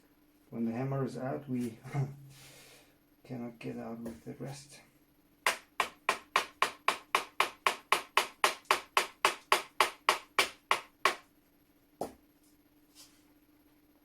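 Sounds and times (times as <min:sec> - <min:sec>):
hammer tapping on metal punch: 0:05.5 - 0:11.2.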